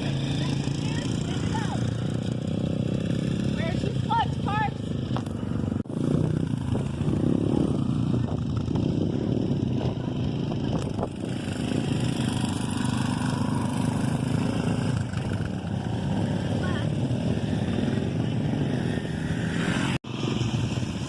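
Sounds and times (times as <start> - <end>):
dirt bike engines running: 0.0 - 21.0.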